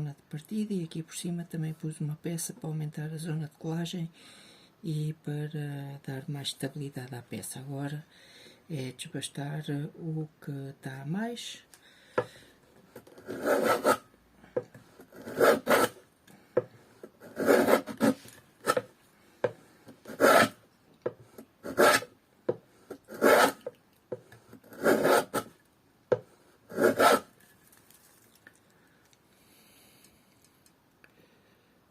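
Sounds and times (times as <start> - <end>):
hand tool rasping wood: 13.0 - 14.0, 15.0 - 16.0, 17.1 - 18.9, 20.0 - 20.6, 21.3 - 22.1, 23.0 - 23.7, 24.6 - 25.5, 26.1 - 27.3.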